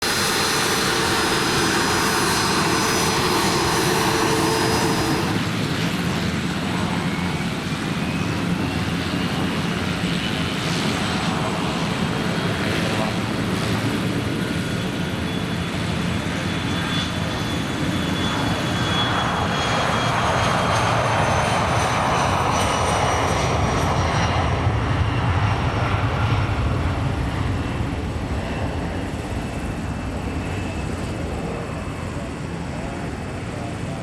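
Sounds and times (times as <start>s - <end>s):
high whistling whines: 0.0s - 5.8s
jet engines roaring: 0.0s - 34.0s.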